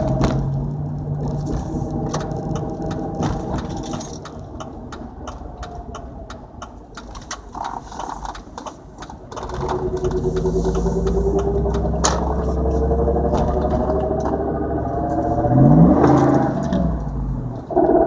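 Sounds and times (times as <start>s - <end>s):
car engine revving: 0.0s - 8.4s, 9.1s - 18.0s
engine rattling and ticking: 0.0s - 18.0s.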